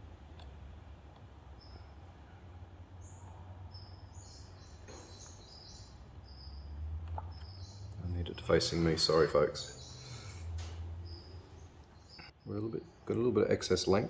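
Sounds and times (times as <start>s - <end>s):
high bird chirps: 3.0s - 13.0s.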